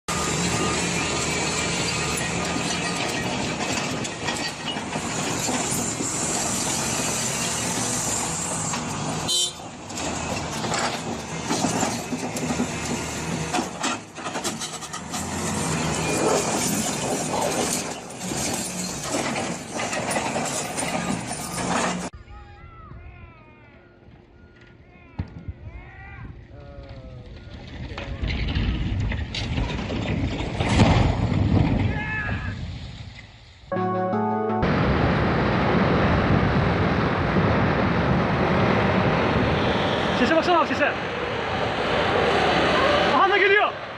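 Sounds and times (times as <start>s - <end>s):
heavy vehicle noise: 0.0s - 22.2s, 32.6s - 43.9s.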